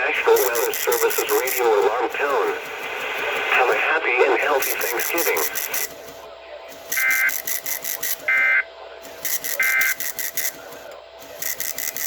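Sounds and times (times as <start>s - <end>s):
fast ticking radio interference: 0.0s - 12.0s
screechy digital data tones: 4.6s - 5.9s, 6.9s - 8.6s, 9.2s - 10.6s.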